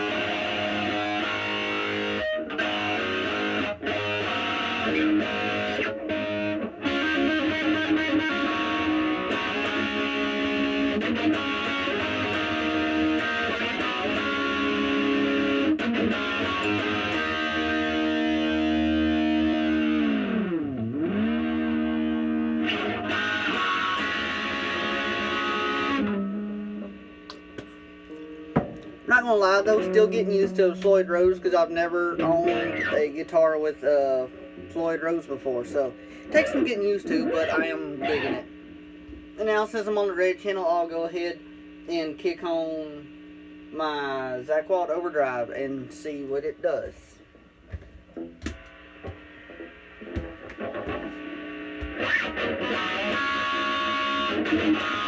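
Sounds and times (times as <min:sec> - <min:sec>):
distorted electric guitar: 0:00.0 - 0:55.0
whammy bar pitch dive: 0:26.1 - 0:31.4.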